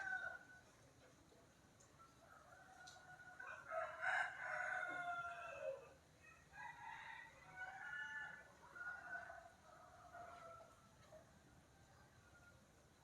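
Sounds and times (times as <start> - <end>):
rooster crowing: 2.7 - 5.8, 6.6 - 10.7.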